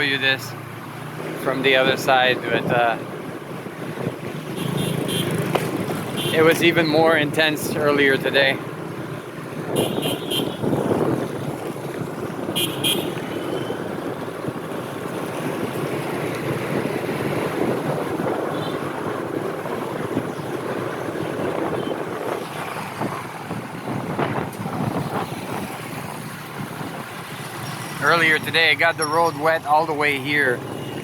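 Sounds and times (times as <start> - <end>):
motorbike and road traffic: 0.0 - 31.0
wind noise on microphone: 1.5 - 8.4, 9.3 - 28.7
high horn beeps: 4.5 - 5.4, 6.2 - 6.5, 9.7 - 10.7, 12.6 - 13.8.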